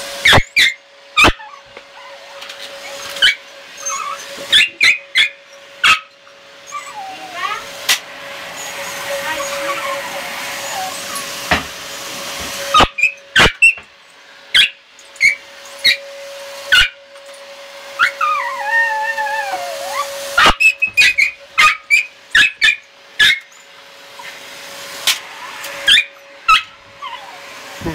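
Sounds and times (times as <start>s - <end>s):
vacuum cleaner hum: 0.0s - 27.9s
dog whining: 0.2s - 7.9s, 8.5s - 11.5s, 12.6s - 13.8s, 14.5s - 17.0s, 17.9s - 27.9s
small dog barking: 4.0s - 6.1s, 16.7s - 17.0s, 19.4s - 23.4s, 25.8s - 27.4s.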